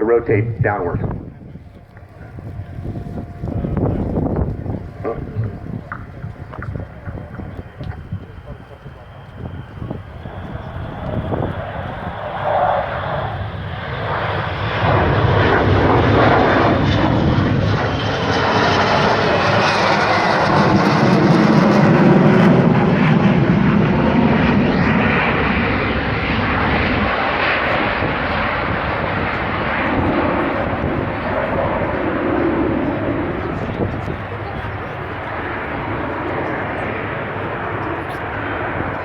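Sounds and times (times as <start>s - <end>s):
jet engine roaring: 0.0s - 39.0s.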